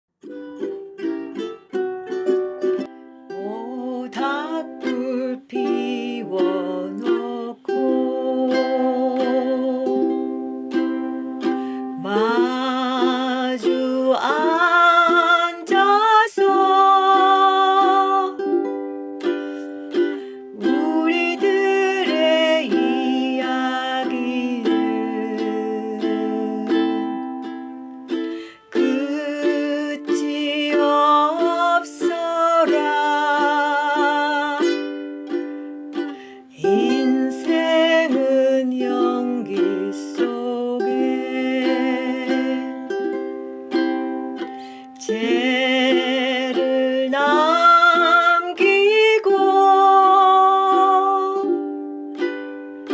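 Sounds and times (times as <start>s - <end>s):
person singing: 0.2s - 52.9s
ukulele strumming chords: 0.2s - 52.9s.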